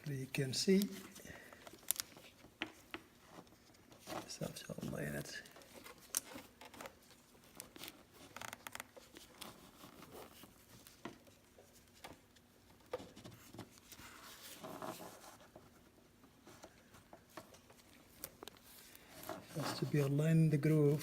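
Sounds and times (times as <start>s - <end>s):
rustling scrape: 18.0s - 21.0s.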